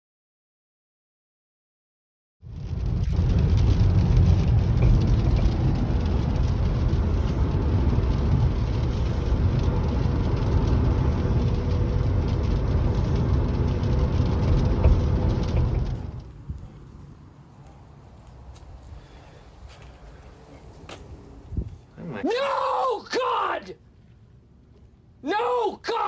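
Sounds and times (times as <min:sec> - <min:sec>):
car engine running: 0:02.6 - 0:16.2.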